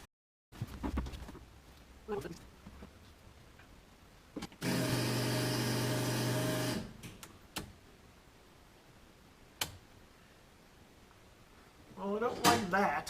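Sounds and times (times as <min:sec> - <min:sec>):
sharp clicks: 0:07.0 - 0:07.8, 0:09.6 - 0:09.8.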